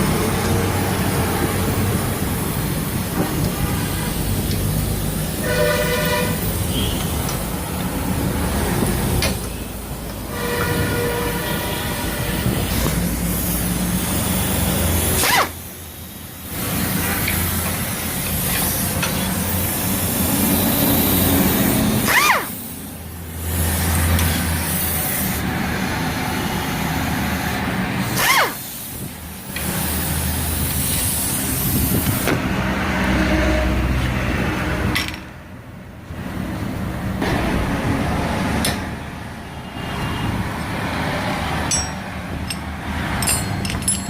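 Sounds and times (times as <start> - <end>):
mechanical noise with hum and hiss: 0.0 - 33.2.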